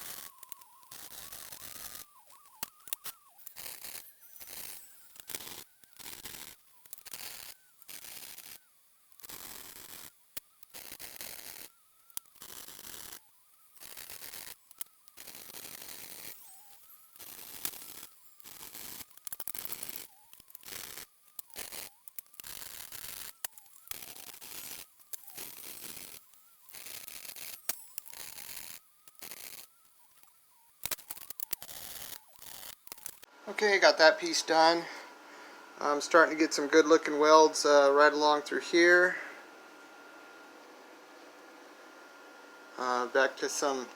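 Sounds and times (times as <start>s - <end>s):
welder crackling and hissing: 0.0s - 39.4s, 42.7s - 43.9s.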